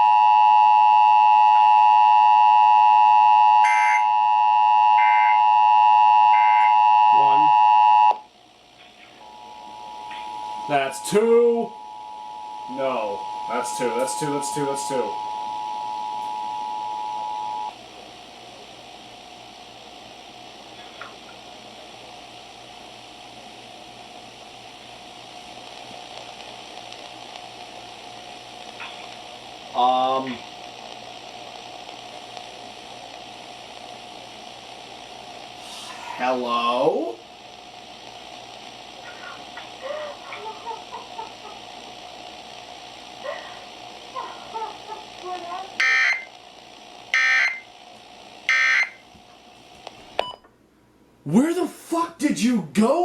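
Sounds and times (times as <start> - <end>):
broadcast hiss: 0.0 - 53.0
faint hum: 0.0 - 53.0
buzzing digital data bursts: 45.8 - 46.3, 47.1 - 47.7, 48.5 - 49.0.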